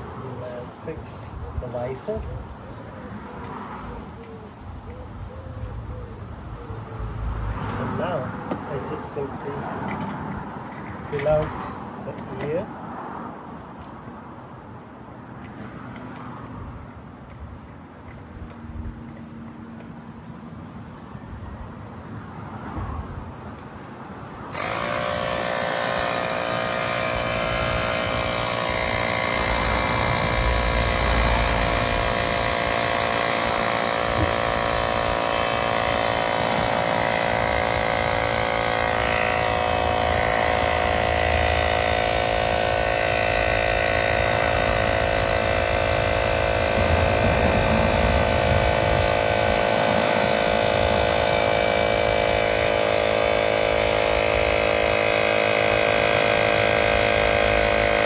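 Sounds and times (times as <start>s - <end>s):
electric tyre pump running: 0.0s - 2.2s, 7.0s - 12.8s, 24.4s - 58.0s.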